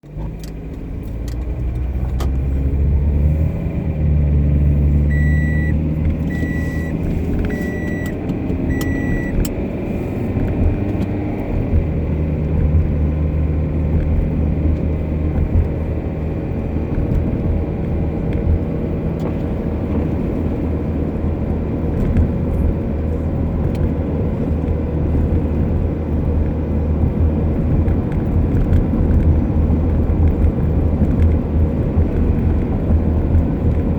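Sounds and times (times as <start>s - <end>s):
car road rumble: 0.0s - 33.9s
short beeps: 5.1s - 9.4s.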